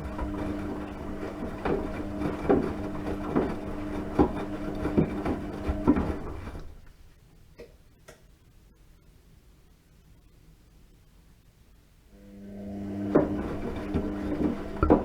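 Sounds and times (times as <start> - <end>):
washing machine drum clunking: 0.0 - 6.8, 13.0 - 15.0
washing machine motor humming: 0.0 - 7.0, 12.2 - 15.0.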